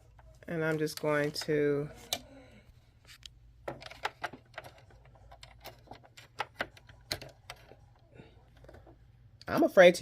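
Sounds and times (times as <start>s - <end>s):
clatter of small hard parts: 3.6s - 9.0s.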